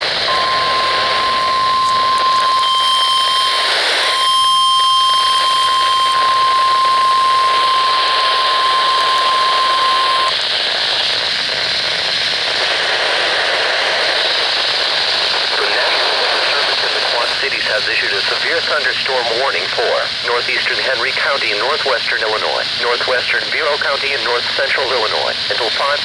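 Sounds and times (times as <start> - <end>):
piercing warning tone: 0.0 - 10.4, 15.6 - 26.0
radio static hiss: 0.0 - 26.0.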